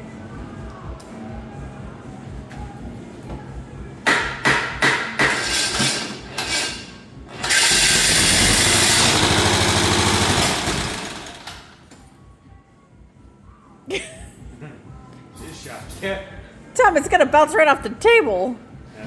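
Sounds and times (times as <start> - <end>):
lawnmower engine running: 5.3 - 11.9.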